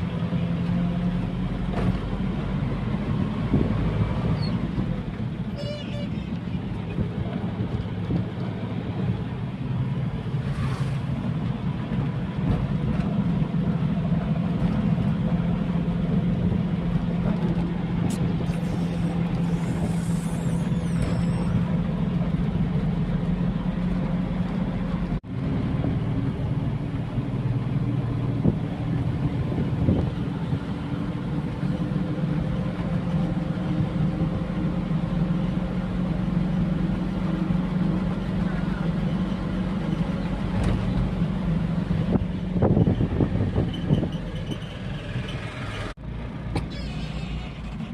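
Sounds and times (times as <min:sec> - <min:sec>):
road noise: 0:00.0 - 0:47.9
vehicle engine humming: 0:00.0 - 0:47.9.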